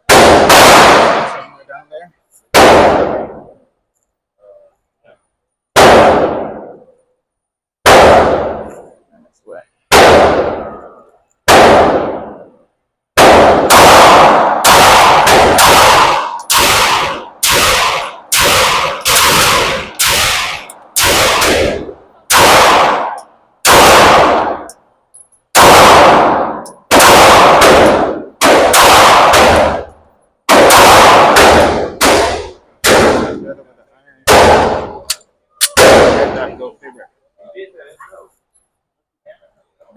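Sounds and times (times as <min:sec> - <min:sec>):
handgun shots echoing indoors: 0:13.2 - 0:24.8.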